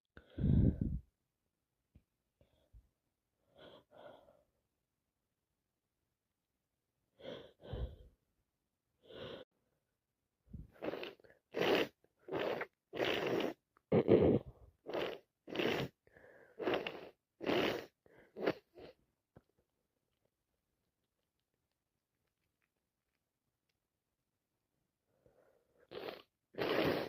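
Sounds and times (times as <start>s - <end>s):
short breaths: 0.2s - 1.0s.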